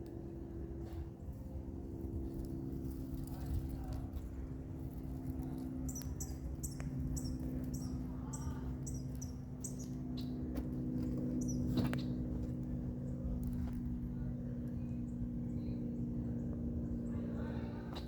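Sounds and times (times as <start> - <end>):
campfire crackling: 0.0 - 15.4
steady low hum: 0.0 - 18.0
bird chirping: 5.8 - 10.4.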